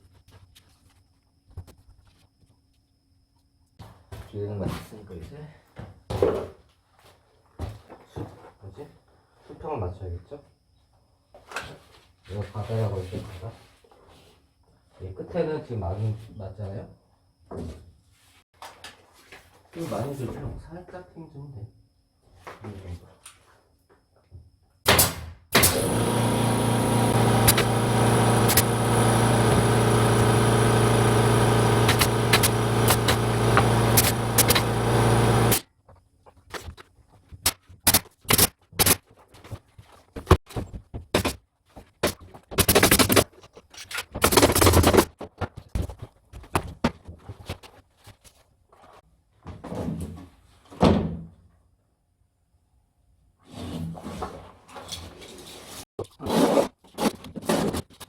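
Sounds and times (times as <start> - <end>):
carpentry work on wood: 25.6 - 35.6, 42.0 - 43.2
power tool motor humming: 25.6 - 35.6.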